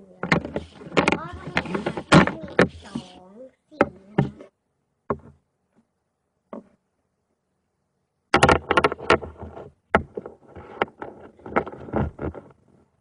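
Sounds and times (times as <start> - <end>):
paint pots clicking and clattering: 0.0 - 5.9, 8.3 - 12.8
paint pots knocking: 0.1 - 3.1.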